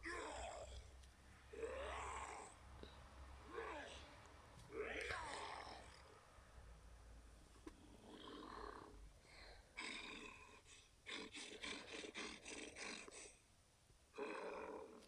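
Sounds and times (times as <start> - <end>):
faint monster growling roar: 0.0 - 0.9, 1.5 - 6.2, 8.0 - 9.0, 14.1 - 15.0.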